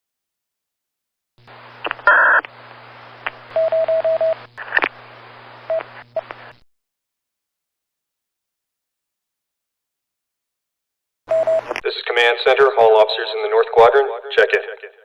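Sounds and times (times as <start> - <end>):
radio static hiss: 1.4 - 6.6, 11.3 - 14.8
radio clicks: 1.5 - 6.6, 11.4 - 11.9
radio squelch burst: 1.5 - 6.6.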